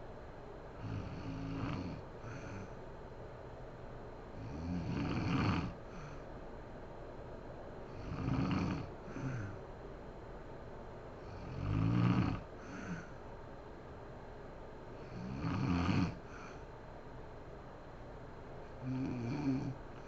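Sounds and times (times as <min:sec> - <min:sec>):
woman snoring: 0:00.8 - 0:02.8, 0:04.4 - 0:06.2, 0:07.9 - 0:09.6, 0:11.2 - 0:13.2, 0:15.0 - 0:16.6, 0:18.8 - 0:20.0.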